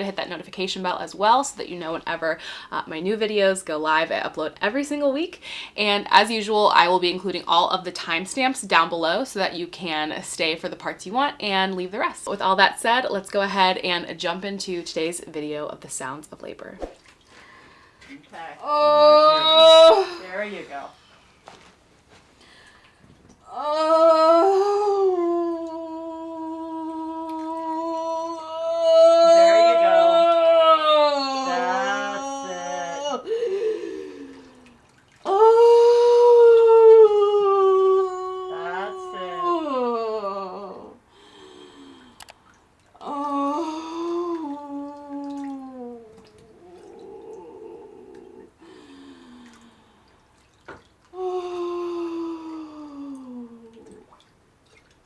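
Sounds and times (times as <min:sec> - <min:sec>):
woman breathing: 0:02.4 - 0:02.7, 0:05.4 - 0:05.8, 0:17.3 - 0:18.2, 0:22.4 - 0:23.0, 0:33.2 - 0:34.8, 0:41.0 - 0:42.4, 0:48.6 - 0:50.2
woman moaning: 0:18.4 - 0:20.6, 0:23.4 - 0:42.0, 0:43.0 - 0:49.5, 0:51.2 - 0:54.0.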